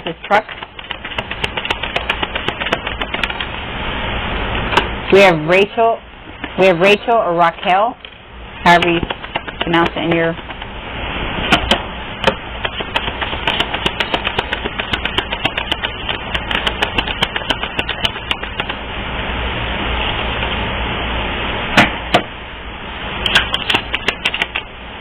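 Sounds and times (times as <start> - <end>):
cards being shuffled: 0.4 - 3.5, 12.6 - 18.8
sharp taps: 0.5 - 3.5, 8.8 - 10.7, 11.5 - 18.8.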